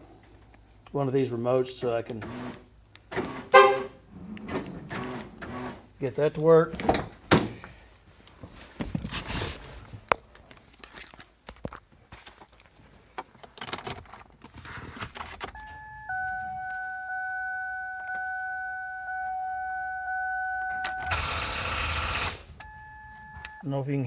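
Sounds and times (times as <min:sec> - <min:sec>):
electronic buzzer tone: 0:03.5 - 0:04.0, 0:15.6 - 0:23.6.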